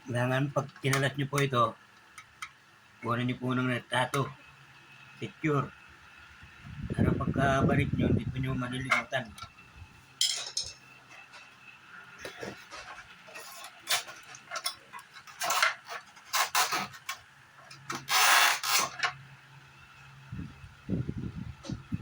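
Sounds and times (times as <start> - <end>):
faint steady hum: 0.0 - 22.0
parts scraping and rubbing: 10.1 - 19.3.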